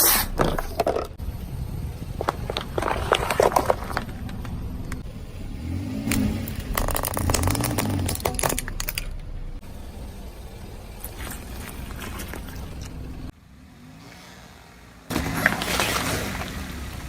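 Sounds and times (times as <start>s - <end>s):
tyres crushing objects: 0.0s - 1.2s, 2.0s - 5.1s, 6.0s - 9.6s
car engine running low: 0.0s - 17.0s.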